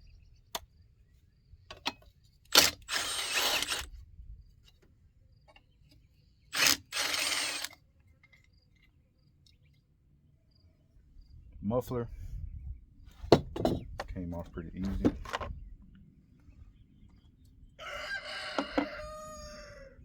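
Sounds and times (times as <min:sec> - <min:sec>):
ratchet wrench ratcheting: 0:02.5 - 0:03.9, 0:06.5 - 0:07.8.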